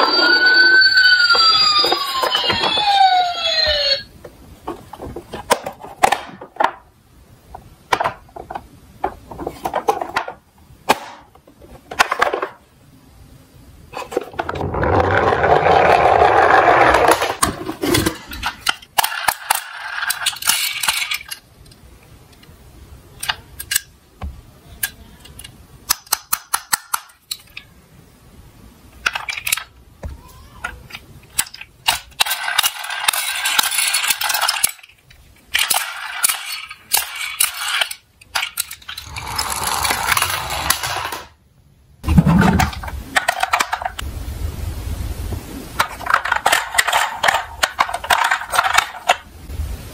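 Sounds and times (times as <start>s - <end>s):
toy cars rolling on track: 0.0s - 4.1s, 14.1s - 21.4s, 30.6s - 41.4s, 45.8s - 49.2s
toy cars clicking and clinking: 14.8s - 21.4s, 30.6s - 41.4s, 45.8s - 49.2s.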